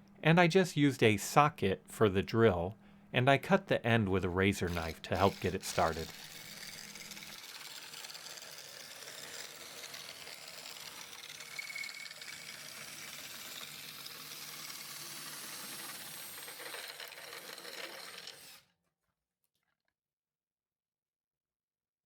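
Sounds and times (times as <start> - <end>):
drill shaving wood into dowel: 4.5 - 18.7.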